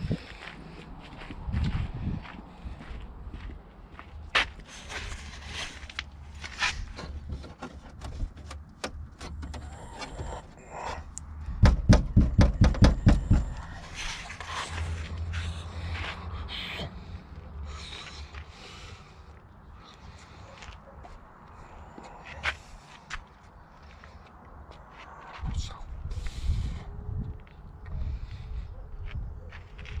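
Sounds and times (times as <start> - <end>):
knocks and clicks on metal: 7.4 - 10.3, 11.6 - 13.6
hammering strikes: 11.6 - 13.7.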